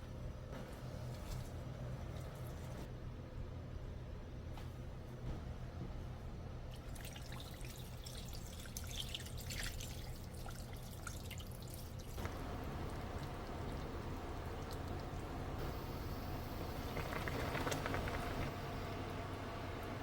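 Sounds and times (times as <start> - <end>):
liquid dripping and trickling: 6.7 - 15.7
liquid bubbling in a pot: 6.8 - 20.0
low steady hum: 12.0 - 20.0.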